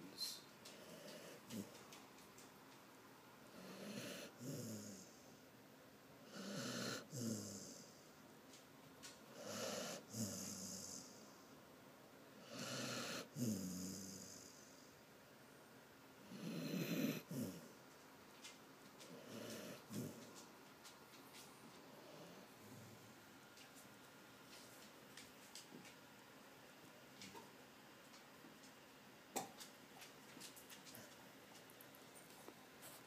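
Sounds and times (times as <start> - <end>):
loud snoring: 3.5 - 5.1, 6.3 - 7.9, 9.4 - 11.2, 12.4 - 14.6, 16.3 - 17.6.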